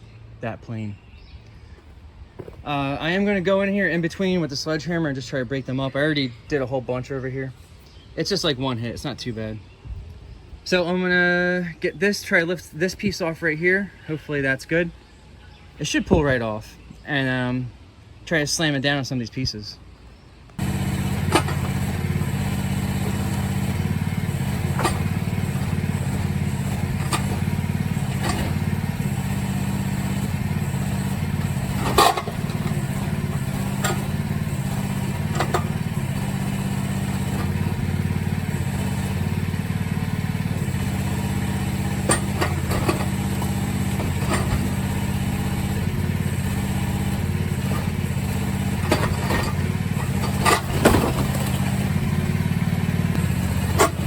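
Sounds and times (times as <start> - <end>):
excavator engine running: 20.6 - 54.0.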